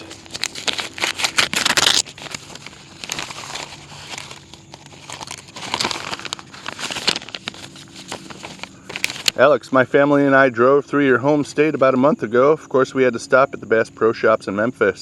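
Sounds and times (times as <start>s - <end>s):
paper package being torn open: 0.0s - 9.5s.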